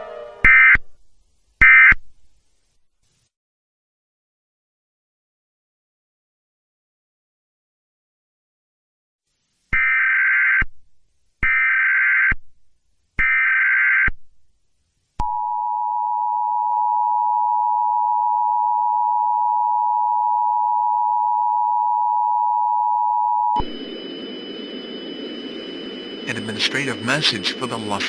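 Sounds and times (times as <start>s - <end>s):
two-tone attention signal: 23.2s - 28.0s.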